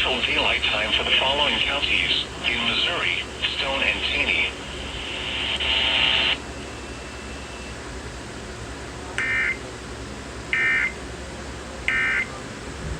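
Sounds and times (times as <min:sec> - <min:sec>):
radio receiver hum and hiss: 0:00.0 - 0:07.8.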